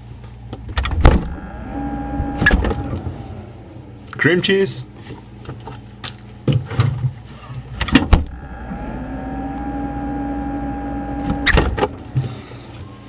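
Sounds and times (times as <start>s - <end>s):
small electric motor humming: 1.2s - 3.8s, 8.3s - 11.7s.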